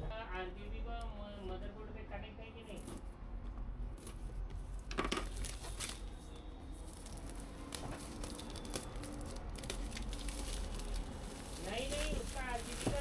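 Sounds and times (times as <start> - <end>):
rustling and crinkling: 4.0 - 13.0.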